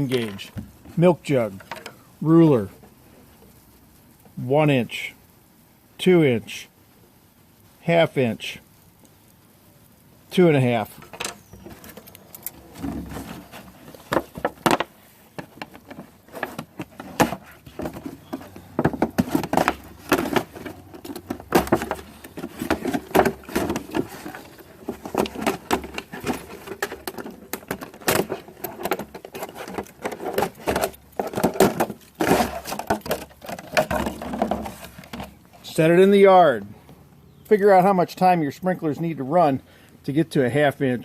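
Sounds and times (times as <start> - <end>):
plastic jug clicks and rustles: 11.0 - 35.8.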